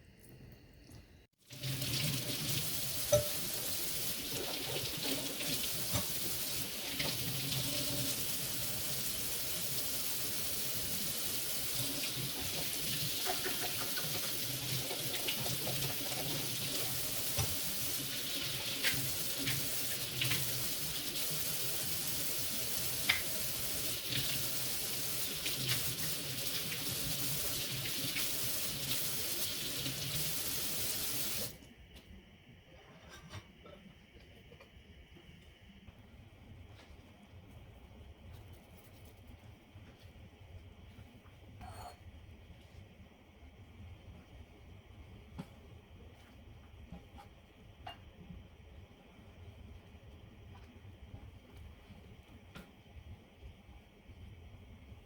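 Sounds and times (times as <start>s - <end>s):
kitchen tap running into sink: 1.4s - 31.6s.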